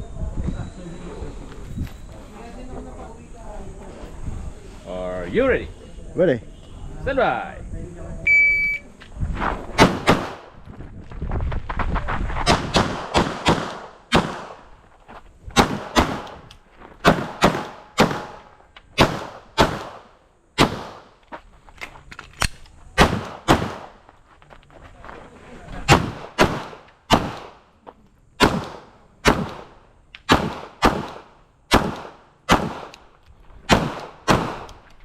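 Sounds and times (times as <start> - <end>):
shot timer beep: 8.3 - 8.8
pistol shots: 9.8 - 10.5, 12.5 - 14.6, 15.6 - 16.4, 17.0 - 21.1, 23.0 - 23.9, 25.9 - 27.6, 28.4 - 33.1, 33.7 - 34.8.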